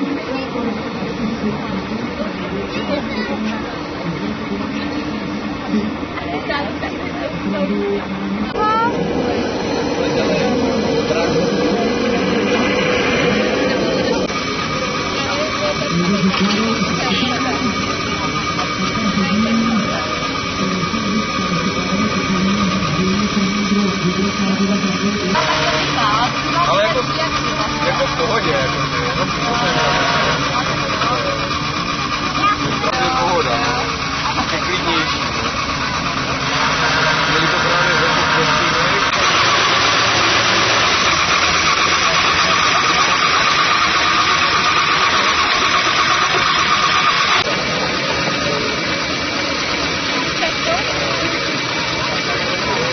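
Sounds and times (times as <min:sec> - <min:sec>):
small model motor running: 0:08.6 - 0:52.9.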